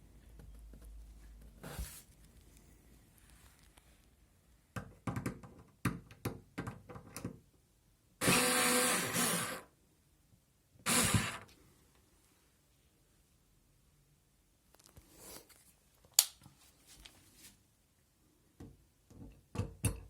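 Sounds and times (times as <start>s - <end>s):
cordless screwdriver motor whirring: 8.2s - 9.6s, 10.9s - 11.4s.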